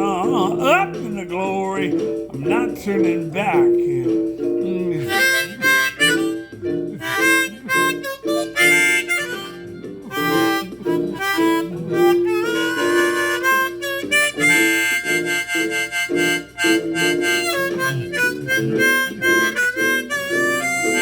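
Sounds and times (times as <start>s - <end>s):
guitar accompaniment: 0.0s - 21.0s
harmonica playing: 0.0s - 21.0s.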